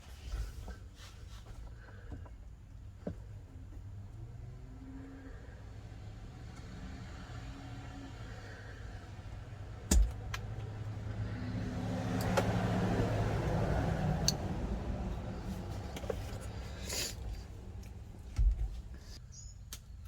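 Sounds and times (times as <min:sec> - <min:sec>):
pickup engine humming: 0:07.8 - 0:19.1.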